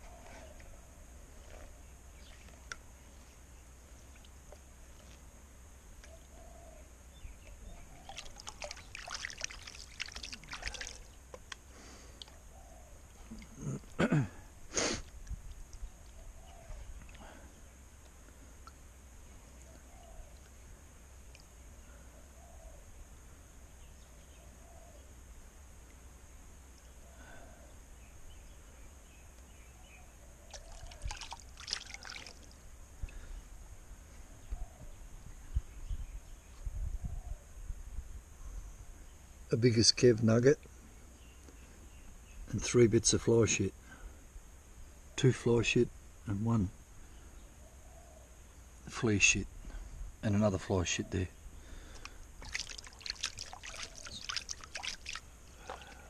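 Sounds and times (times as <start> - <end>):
faint outdoor background: 0.0 - 56.0
water pouring and trickling: 7.9 - 11.3, 30.5 - 32.6, 52.4 - 56.0
gravel clicks: 51.7 - 56.0.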